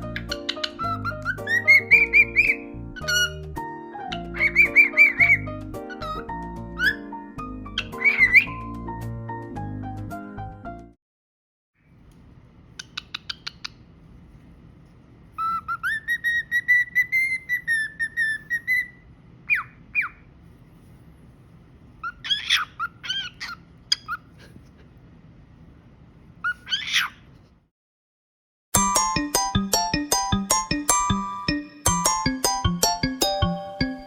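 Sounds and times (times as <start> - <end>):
cockatiel whistling and chirping: 0.1 - 7.1, 7.7 - 8.7, 15.4 - 20.2, 22.0 - 24.2, 26.4 - 27.2.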